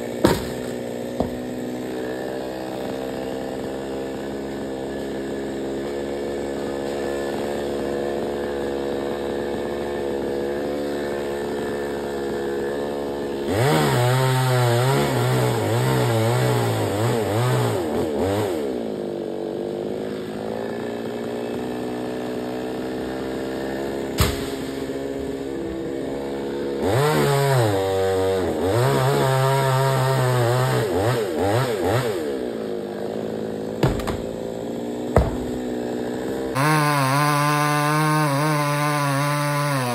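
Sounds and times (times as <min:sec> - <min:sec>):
chainsaw engine revving: 0:00.0 - 0:39.9
sharp knock: 0:33.8 - 0:34.3, 0:35.2 - 0:35.5.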